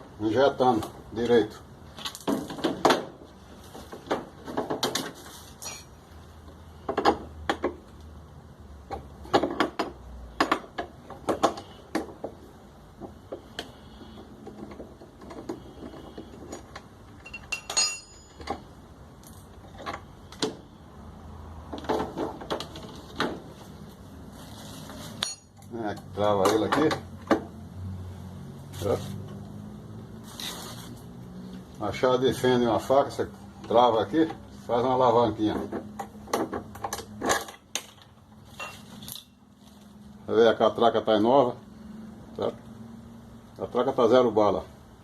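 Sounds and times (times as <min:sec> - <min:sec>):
hand tools clinking on machine parts: 0:05.6 - 0:06.0, 0:15.9 - 0:18.6, 0:25.2 - 0:27.0.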